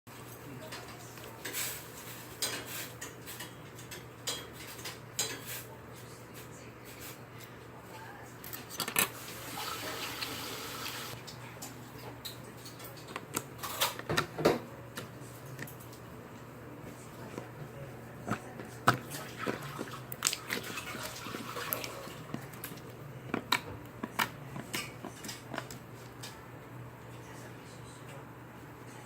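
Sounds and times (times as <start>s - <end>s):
kitchen utensils clinking: 0.6s - 5.8s.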